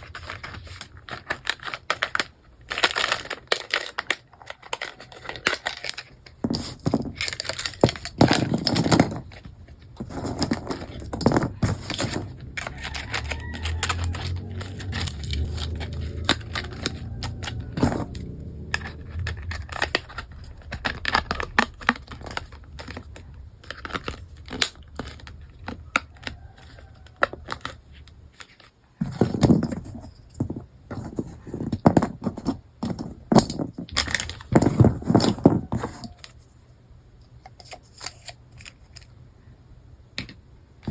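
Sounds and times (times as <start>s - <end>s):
plastic packaging crinkling and tearing: 0.0s - 28.7s
small plastic pieces clicking: 0.0s - 36.4s.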